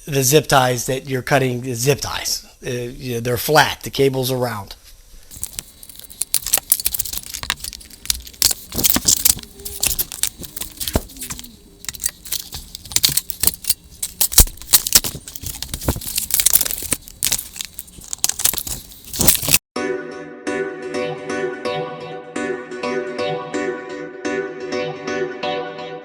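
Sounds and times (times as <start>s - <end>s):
plastic wrap and foam crinkling: 5.2s - 19.6s.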